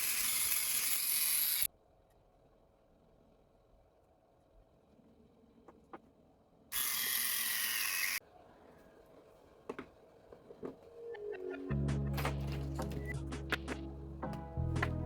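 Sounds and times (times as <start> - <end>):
small electric motor whirring: 0.0 - 1.7, 6.8 - 8.2
background music: 10.8 - 15.0.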